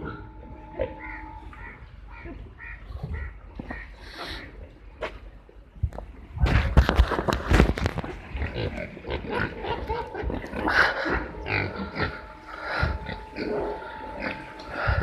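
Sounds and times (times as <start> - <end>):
pigs grunting and oinking: 0.0 - 4.4, 8.2 - 15.0.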